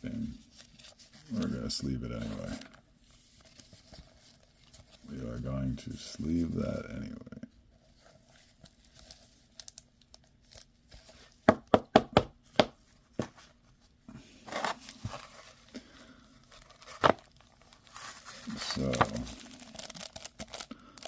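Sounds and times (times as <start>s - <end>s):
plastic packaging crinkling: 8.4s - 11.4s, 16.4s - 21.0s.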